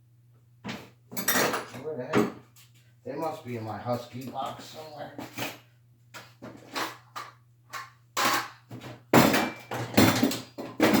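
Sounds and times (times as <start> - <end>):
tools clattering in a toolbox: 1.1 - 2.4, 6.4 - 11.0.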